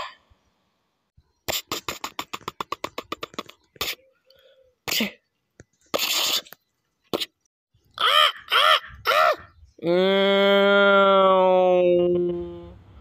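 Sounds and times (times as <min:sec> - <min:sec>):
mouth clicks: 0:01.5 - 0:05.0, 0:05.6 - 0:07.4
mouth hissing bursts: 0:05.9 - 0:06.6.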